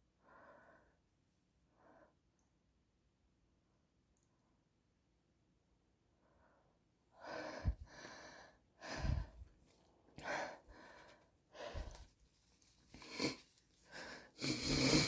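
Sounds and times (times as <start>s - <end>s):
person gasping breaths: 7.2s - 9.5s.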